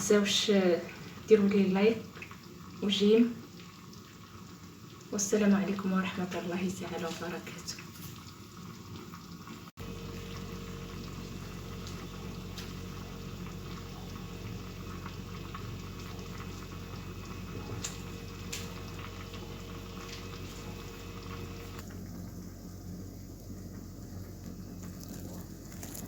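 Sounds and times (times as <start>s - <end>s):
low hum: 9.8s - 26.0s.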